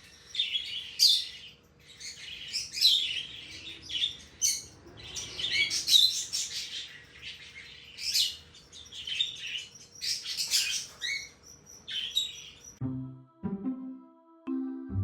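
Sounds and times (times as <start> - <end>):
small birds chirping: 0.0 - 12.8.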